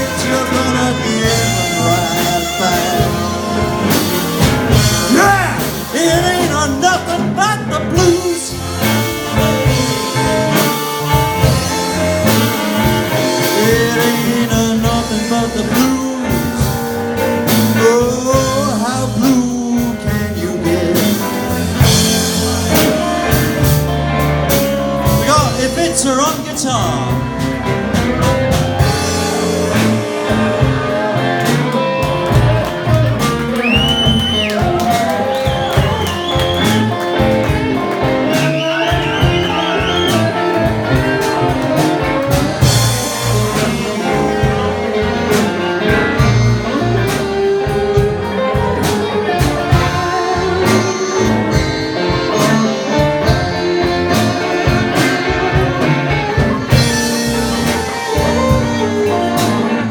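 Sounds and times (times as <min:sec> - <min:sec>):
blues guitar solo: 0:00.0 - 0:59.9
rhythm section with drums: 0:00.0 - 0:59.9.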